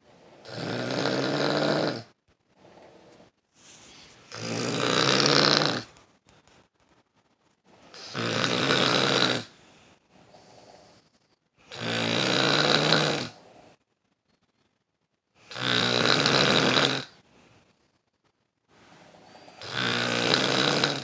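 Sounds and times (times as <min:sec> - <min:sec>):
person snoring loudly: 0:00.4 - 0:02.1, 0:04.3 - 0:05.9, 0:08.0 - 0:09.5, 0:11.7 - 0:13.4, 0:15.5 - 0:17.2, 0:19.5 - 0:21.0
faint breaths: 0:02.0 - 0:05.0, 0:09.4 - 0:11.8, 0:17.0 - 0:19.8.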